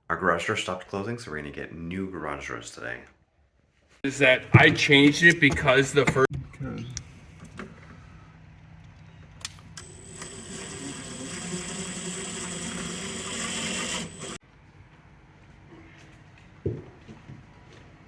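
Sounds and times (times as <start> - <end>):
motor whining: 9.8 - 14.4.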